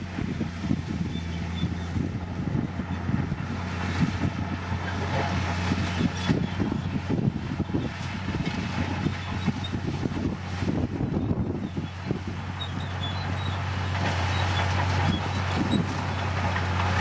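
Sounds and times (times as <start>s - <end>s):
bulldozer diesel engine running: 0.0s - 17.0s.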